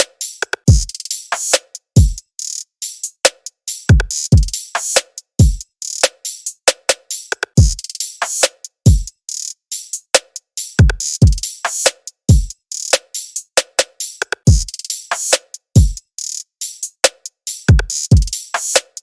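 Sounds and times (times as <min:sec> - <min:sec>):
hi-hats: 0:00.0 - 0:19.0
deep kick drums: 0:08.9 - 0:09.1.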